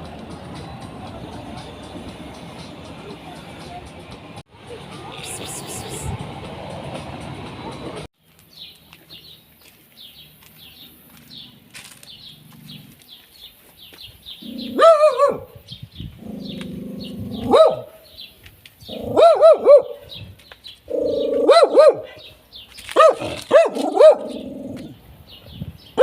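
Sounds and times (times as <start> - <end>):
low growl-like animal sounds: 12.2 - 13.0, 16.1 - 17.5, 20.9 - 21.5, 24.2 - 25.0
animal yelping calls: 20.9 - 22.1.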